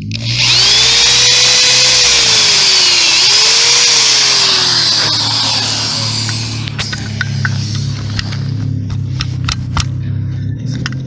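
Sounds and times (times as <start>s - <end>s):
electric drill whining under load: 0.0s - 8.4s.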